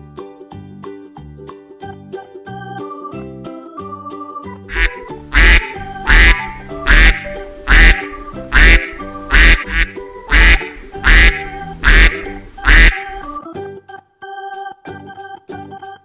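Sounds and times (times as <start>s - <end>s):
background music with sustained notes: 2.0s - 15.4s
duck quacking: 4.7s - 13.4s.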